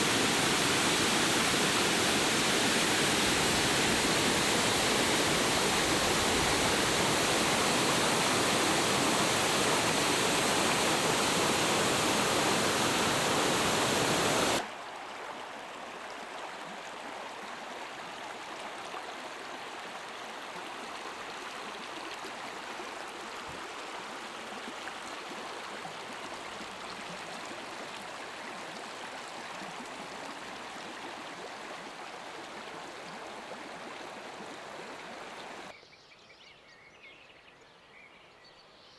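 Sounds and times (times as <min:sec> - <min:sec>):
heavy rain pouring: 0:00.0 - 0:14.6.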